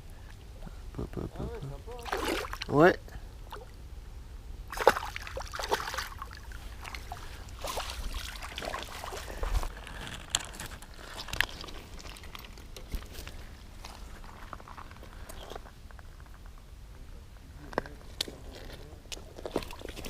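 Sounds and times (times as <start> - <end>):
short water splashes: 1.9 - 2.8, 4.7 - 9.6, 19.5 - 20.0
river water trickling: 1.9 - 15.6, 19.1 - 20.0.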